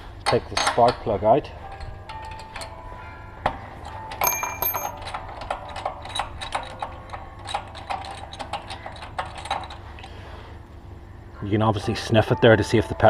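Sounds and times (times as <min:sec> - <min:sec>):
spanner clinking on metal: 0:04.1 - 0:09.8
short metallic ring: 0:04.2 - 0:05.0.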